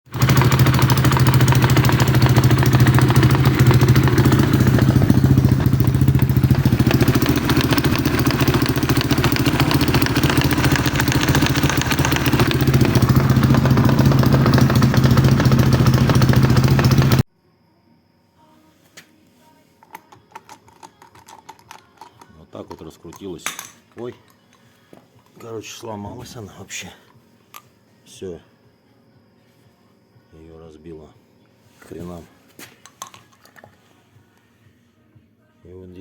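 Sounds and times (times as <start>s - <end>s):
engine knocking: 0.1s - 17.2s
engine running loud: 0.1s - 17.2s.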